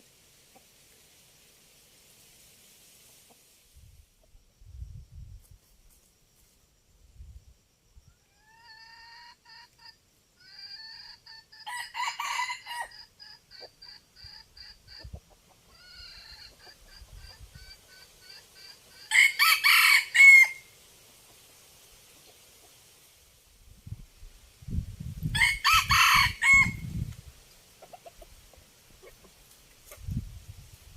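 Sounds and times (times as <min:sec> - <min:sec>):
rooster crowing: 0:11.6 - 0:13.1, 0:19.1 - 0:20.7, 0:25.3 - 0:26.9.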